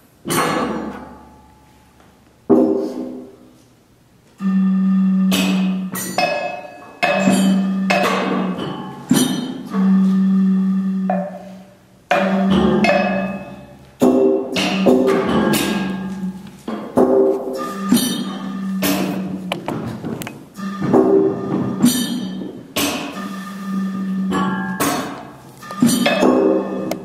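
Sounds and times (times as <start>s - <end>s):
pitched ringing percussion strikes: 4.4s - 19.7s, 20.4s - 27.0s.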